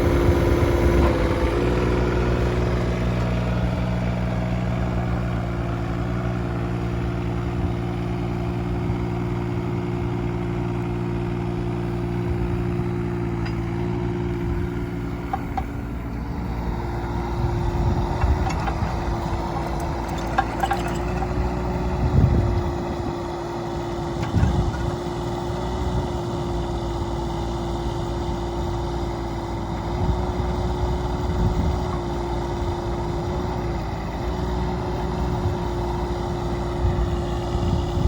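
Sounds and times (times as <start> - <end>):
diesel engine running with whine: 0.0 - 38.0.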